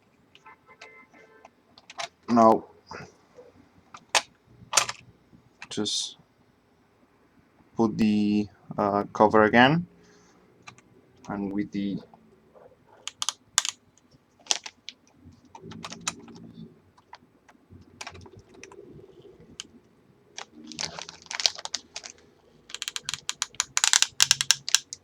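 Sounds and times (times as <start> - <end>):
cpu socket lever clicking: 13.1 - 13.8, 22.7 - 25.0.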